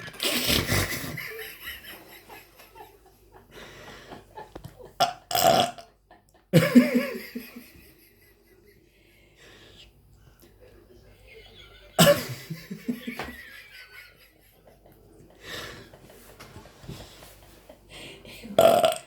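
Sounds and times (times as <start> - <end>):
laughter: 0.5 - 5.1, 5.8 - 9.1, 10.6 - 18.6
loud burps: 5.0 - 5.9, 18.6 - 19.0.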